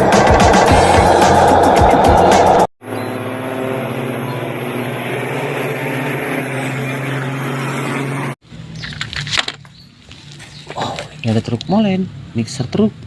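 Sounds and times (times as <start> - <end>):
steady engine drone: 0.0 - 8.8.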